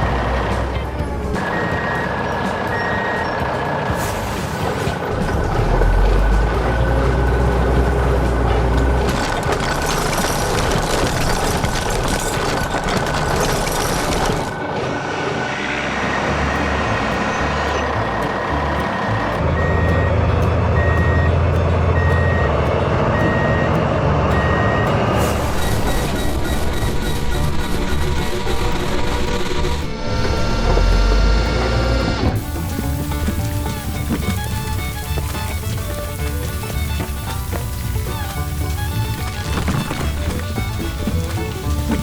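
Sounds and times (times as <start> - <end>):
heavy truck engines running: 0.0 - 42.0
reversing alarm beeping: 1.4 - 3.6, 19.4 - 28.3.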